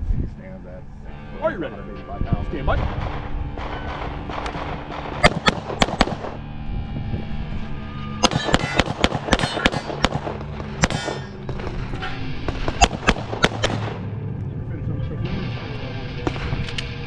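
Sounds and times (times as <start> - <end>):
pistol shots: 2.8 - 6.4, 8.2 - 14.1.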